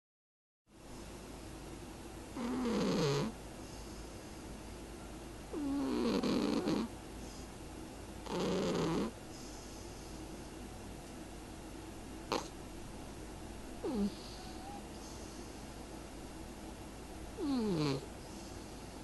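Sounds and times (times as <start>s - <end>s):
cat snoring: 2.3s - 4.1s, 5.5s - 7.4s, 8.2s - 10.0s, 12.3s - 12.5s, 13.8s - 15.6s, 17.4s - 19.0s.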